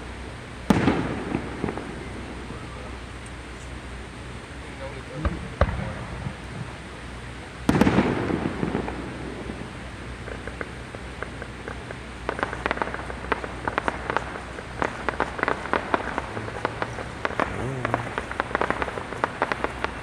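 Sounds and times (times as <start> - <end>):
crackling firework pops: 0.7 - 2.0, 5.2 - 6.4, 7.6 - 20.0.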